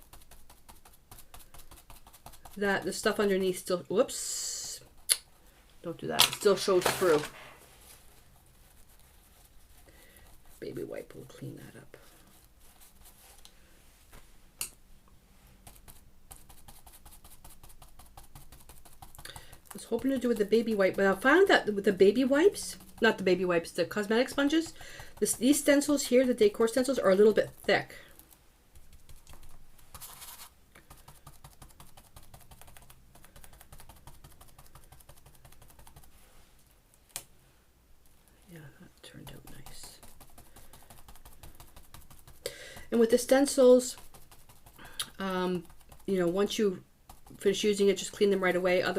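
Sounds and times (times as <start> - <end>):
paint dabbing taps and scratches: 0.0 - 5.4, 15.6 - 36.1, 39.1 - 48.9.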